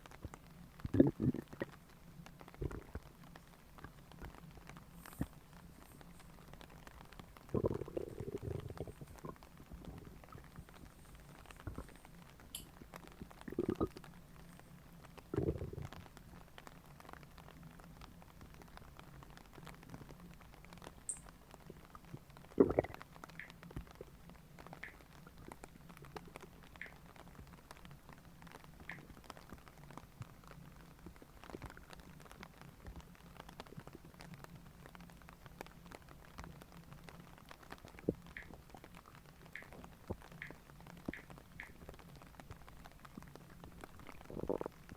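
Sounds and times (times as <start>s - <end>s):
stomach gurgling and rumbling: 0.0s - 44.9s
faint stomach pops and squelches: 0.2s - 1.8s, 2.4s - 3.0s, 7.4s - 12.0s, 15.3s - 16.0s, 22.6s - 24.0s, 37.8s - 38.8s, 39.5s - 42.0s, 44.0s - 44.9s.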